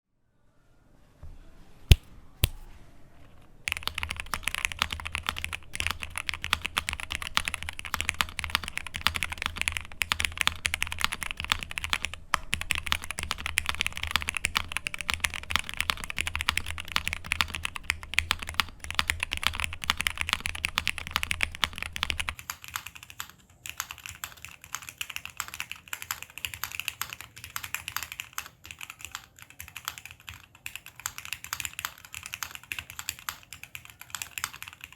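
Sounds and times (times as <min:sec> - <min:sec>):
sharp clicks: 0:01.9 - 0:02.6
typing on mechanical keyboard: 0:03.7 - 0:34.9.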